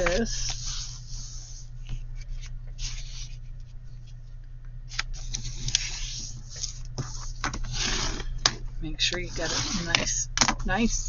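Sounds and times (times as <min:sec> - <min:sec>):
paper rustling and creasing: 0:00.0 - 0:04.2, 0:04.9 - 0:08.4, 0:09.2 - 0:10.1
low steady hum: 0:00.0 - 0:11.0.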